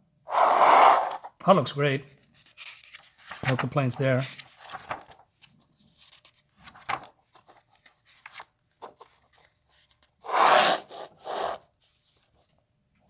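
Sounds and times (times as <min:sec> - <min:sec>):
paper packaging rustling: 0:02.1 - 0:10.1.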